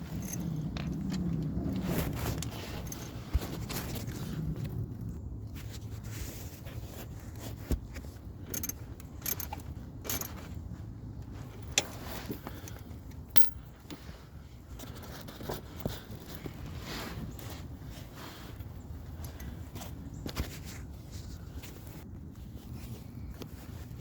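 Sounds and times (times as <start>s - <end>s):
hand tools clinking and scraping: 0.0s - 1.0s, 1.8s - 4.1s, 8.4s - 10.5s, 13.4s - 13.7s.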